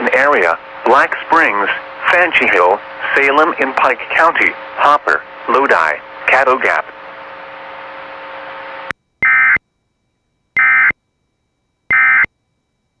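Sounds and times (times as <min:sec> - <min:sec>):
radio hiss with faint hum: 0:00.0 - 0:09.0.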